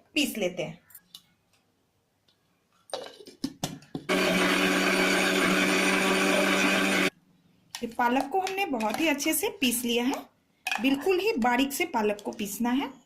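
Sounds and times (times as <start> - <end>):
mixer grinder motor grinding: 4.1 - 7.1.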